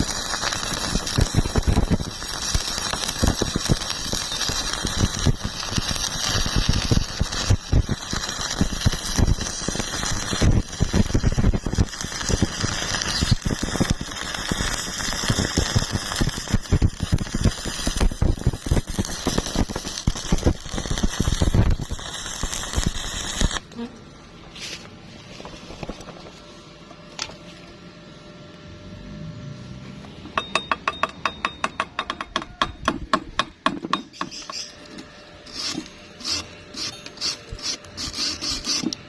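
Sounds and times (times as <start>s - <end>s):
electric welding arc crackling: 0.0s - 23.8s, 34.2s - 39.0s.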